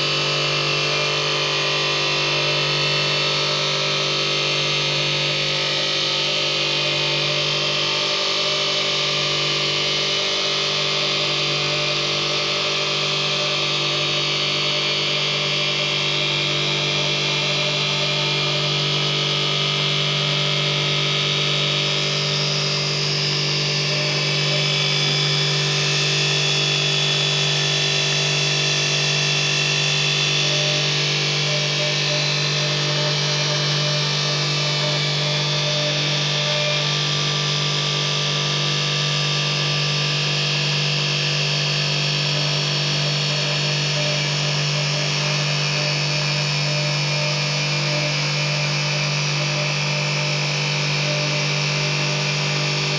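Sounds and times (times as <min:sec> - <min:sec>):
lathe running: 0:00.0 - 0:40.6.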